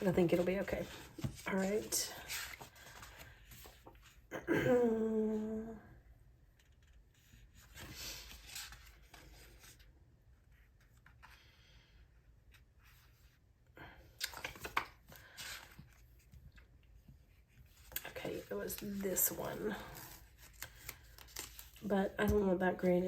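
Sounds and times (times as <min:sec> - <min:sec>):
paper sticker sheets crinkling: 0:17.8 - 0:23.0.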